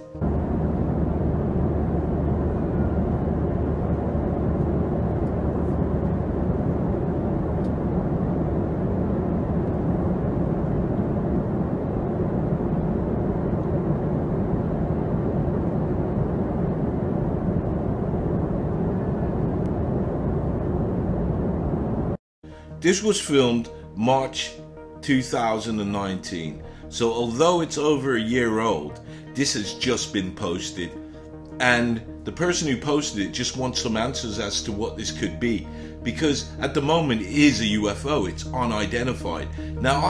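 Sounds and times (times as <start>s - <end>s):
airliner cabin engine roar: 0.0s - 22.2s.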